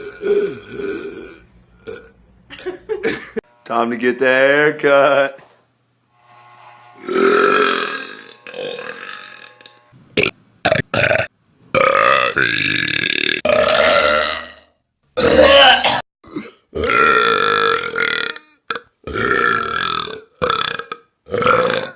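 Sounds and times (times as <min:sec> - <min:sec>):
person burping: 0:00.0 - 0:02.2, 0:07.0 - 0:09.3, 0:10.2 - 0:21.9.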